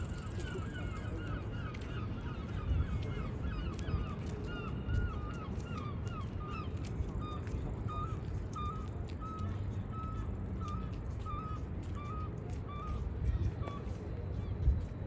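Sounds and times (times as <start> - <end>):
wind rumble on microphone: 0.0 - 15.0.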